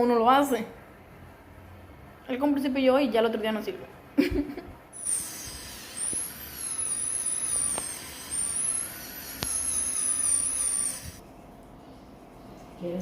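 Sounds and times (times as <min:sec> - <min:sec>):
dental drill whining: 0:05.0 - 0:11.2.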